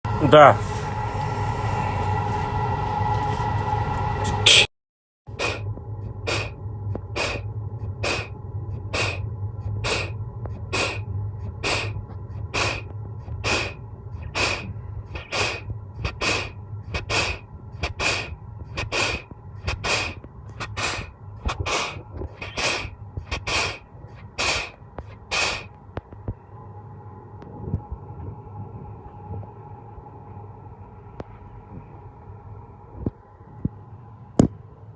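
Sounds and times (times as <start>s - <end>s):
steady low hum: 0.1s - 4.7s, 5.3s - 34.9s
short air hisses: 4.3s - 4.7s, 5.4s - 5.6s, 6.3s - 6.6s, 7.2s - 8.3s, 8.9s - 9.2s, 9.8s - 11.0s, 11.6s - 12.0s, 12.6s - 25.7s.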